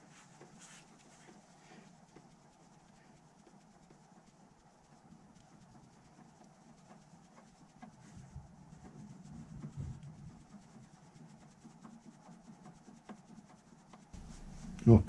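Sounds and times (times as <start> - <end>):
low hum: 14.2 - 15.0.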